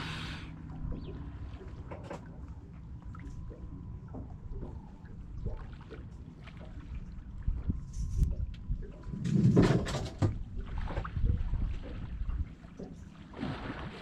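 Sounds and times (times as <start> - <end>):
wind rumbling on microphone: 7.0 - 12.6.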